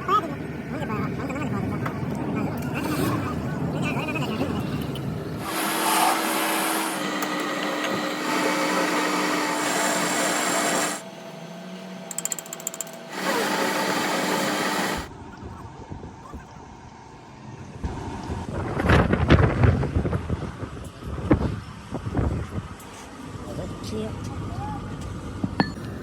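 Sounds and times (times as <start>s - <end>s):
machine hum and whine: 0.0s - 26.0s
power tools running: 5.4s - 15.1s.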